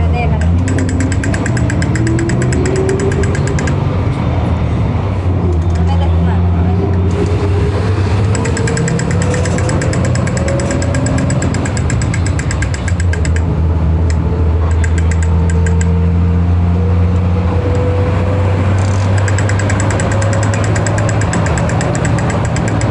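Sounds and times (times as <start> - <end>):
bus engine droning: 0.0 - 22.9
rapid ticking or rattling: 0.4 - 3.8, 8.2 - 13.5, 14.1 - 15.9, 18.8 - 22.9.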